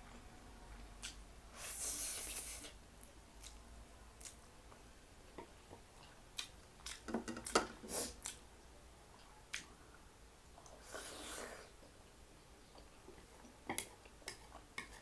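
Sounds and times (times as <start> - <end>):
chewing and wet mouth noises: 0.1 - 1.3, 2.0 - 4.9, 5.6 - 8.5.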